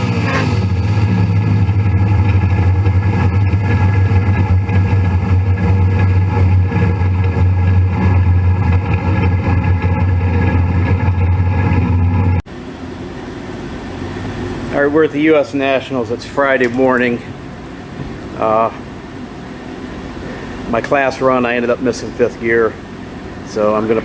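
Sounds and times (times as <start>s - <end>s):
car engine running steadily: 0.0s - 15.2s.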